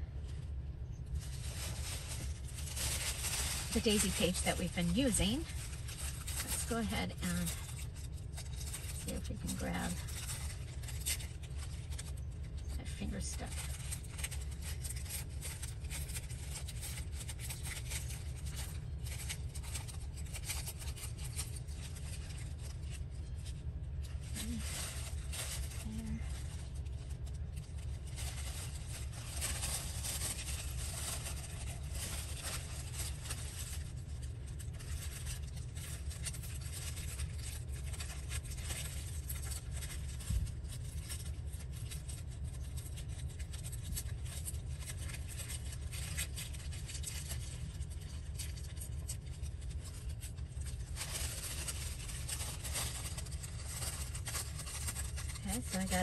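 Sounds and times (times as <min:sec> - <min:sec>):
steady low hum: 0:00.0 - 0:56.0
paper rustling: 0:00.2 - 0:56.0.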